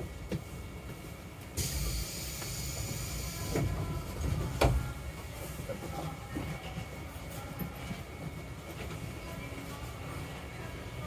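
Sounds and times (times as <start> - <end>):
electric train rumbling: 0.0 - 11.0
hiss: 1.6 - 3.6.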